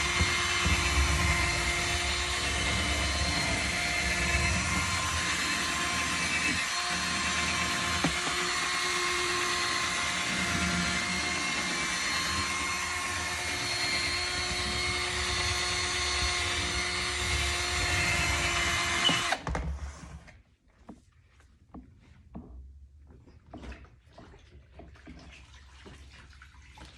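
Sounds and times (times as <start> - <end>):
small electric motor whining: 0.0 - 19.4.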